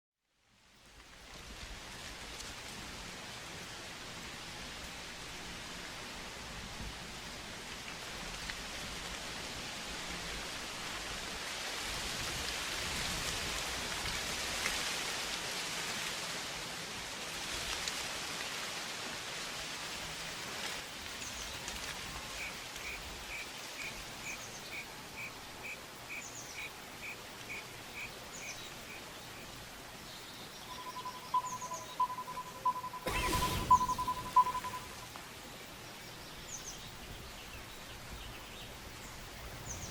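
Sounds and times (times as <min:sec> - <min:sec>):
faint bird chirps: 0:30.3 - 0:35.1
bird repeating short high call: 0:30.7 - 0:35.0
low pulsing whistle: 0:30.7 - 0:35.1.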